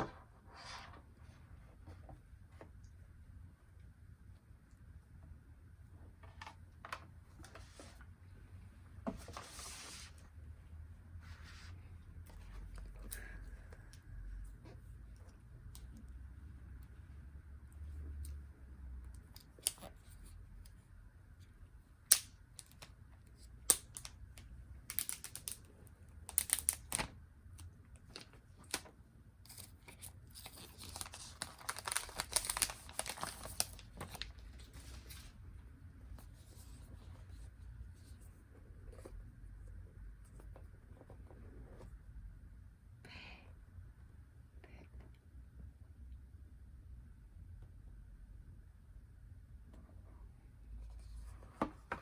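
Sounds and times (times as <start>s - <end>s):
packaging tearing and crinkling: 29.5s - 34.2s.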